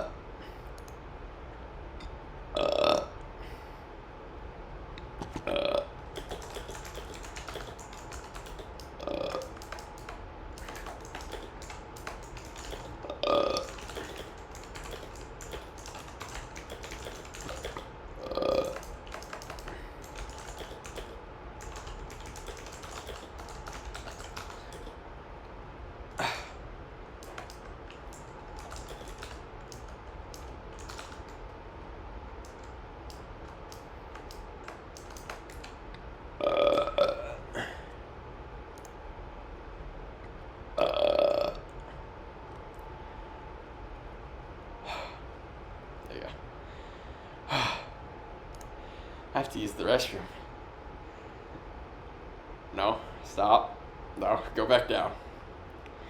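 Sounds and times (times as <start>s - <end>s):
person burping: 2.5s - 3.2s, 5.4s - 5.9s, 9.0s - 9.4s, 13.0s - 13.7s, 18.2s - 18.8s, 36.4s - 37.9s, 40.8s - 41.7s
keyboard typing clicks: 5.2s - 17.9s, 18.5s - 25.0s, 27.2s - 31.6s, 32.4s - 35.8s.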